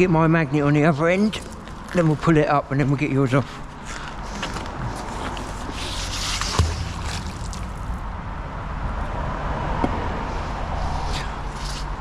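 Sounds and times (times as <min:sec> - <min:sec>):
water sloshing and trickling: 0:05.0 - 0:08.1
sharp knock: 0:06.4 - 0:08.0.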